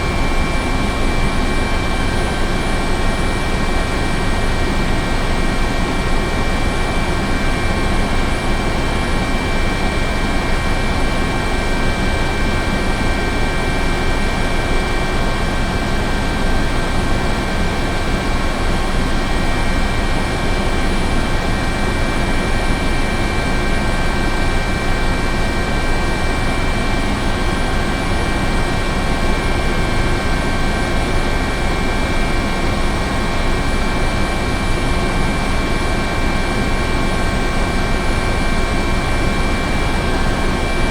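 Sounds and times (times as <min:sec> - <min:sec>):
helicopter engine and rotor: 0:00.0 - 0:40.9.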